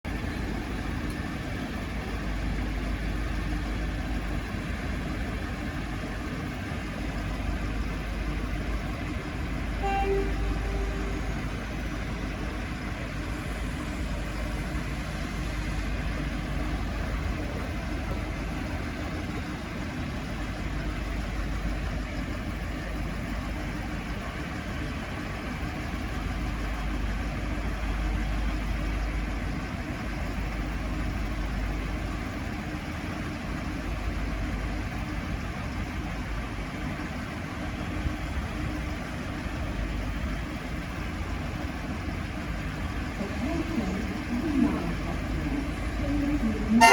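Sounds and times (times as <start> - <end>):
diesel railcars idling: 0.1 - 46.9
short tone: 9.7 - 12.5.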